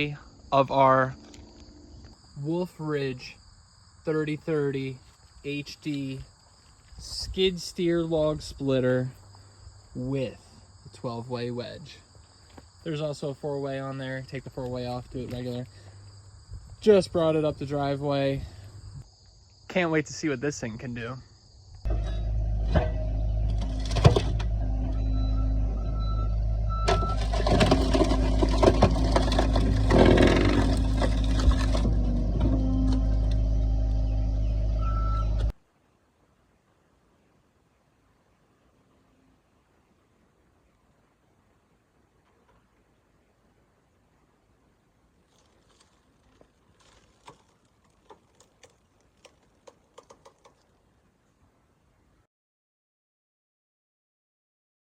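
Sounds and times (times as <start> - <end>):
skid steer engine running: 21.9 - 35.5
knocks and clatter: 26.9 - 32.0.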